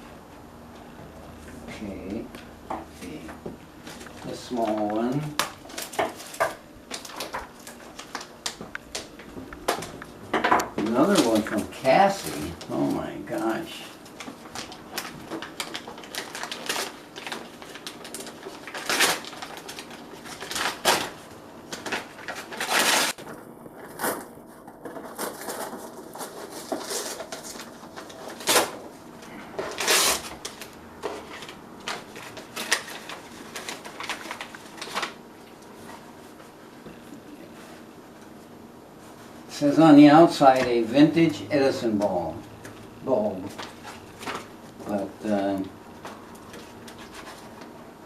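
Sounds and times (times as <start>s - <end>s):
wrapping paper tearing and crumpling: 3.8s - 9.2s, 10.9s - 35.2s, 43.1s - 47.7s.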